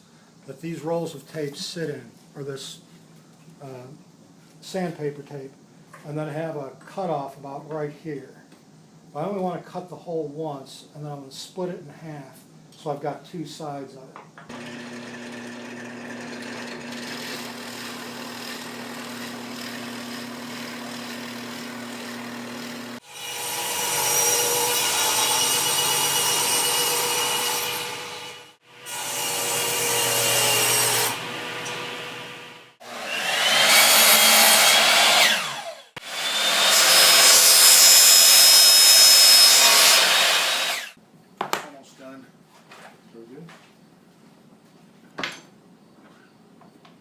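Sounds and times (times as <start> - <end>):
power tool cutting wood: 14.5 - 41.0.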